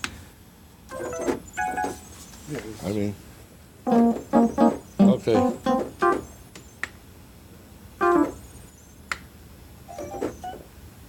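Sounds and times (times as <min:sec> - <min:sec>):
synthesizer playing short notes: 0:03.9 - 0:06.2.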